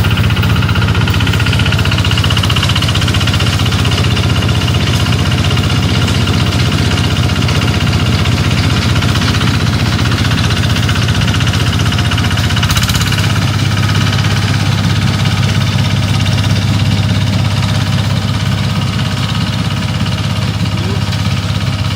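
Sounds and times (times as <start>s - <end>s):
small engine running: 0.0s - 21.9s.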